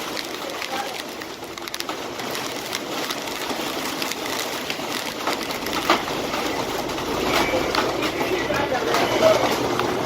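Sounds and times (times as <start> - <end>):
steady rain patter: 0.0 - 10.0.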